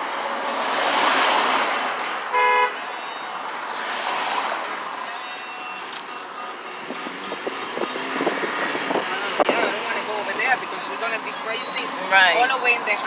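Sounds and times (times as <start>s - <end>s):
vehicle passing: 0.0s - 2.8s, 3.4s - 5.2s
road traffic noise: 0.0s - 13.0s
short car horn toot: 2.3s - 2.8s.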